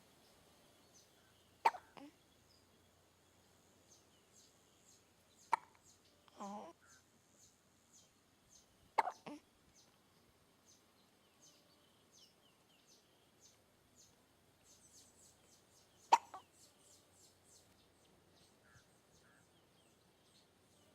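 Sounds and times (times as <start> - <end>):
faint high-pitched chirps: 0.2 - 20.9
hiccup sound effect: 1.6 - 2.1, 9.0 - 9.4, 16.1 - 16.4.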